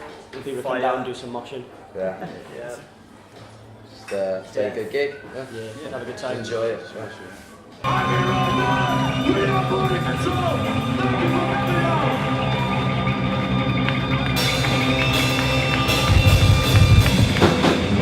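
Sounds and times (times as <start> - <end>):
heavy drums and cymbals: 7.9 - 13.2, 14.4 - 18.0
bending electric guitar: 7.9 - 18.0.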